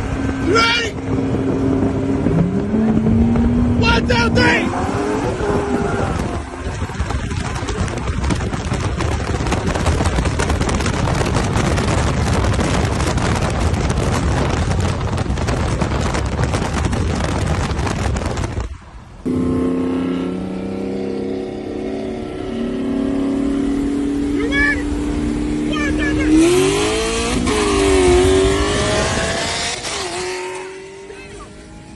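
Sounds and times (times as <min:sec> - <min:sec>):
racing cars engine and wind rush: 0:00.0 - 0:31.9
engine drone falling in pitch: 0:19.2 - 0:31.9.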